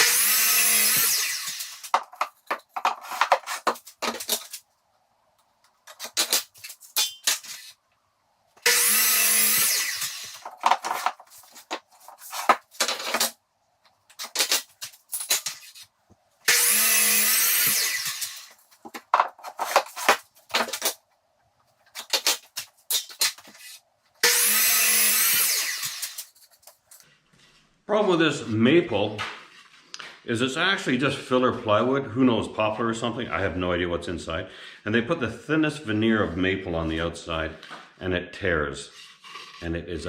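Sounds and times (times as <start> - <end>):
power drill driving screws: 0.0 - 1.9, 8.6 - 10.5, 16.5 - 18.5, 24.2 - 26.2.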